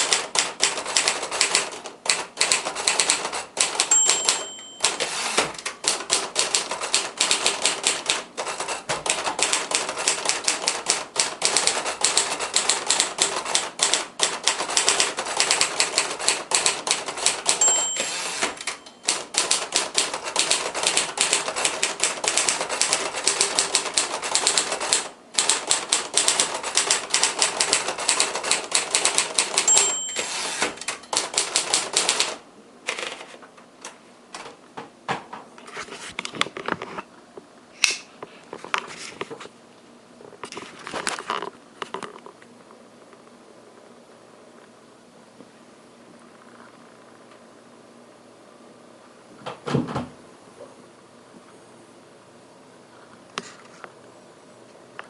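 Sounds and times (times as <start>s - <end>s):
typewriter margin bell ringing: 3.7s - 5.4s, 17.4s - 19.3s, 29.0s - 32.3s.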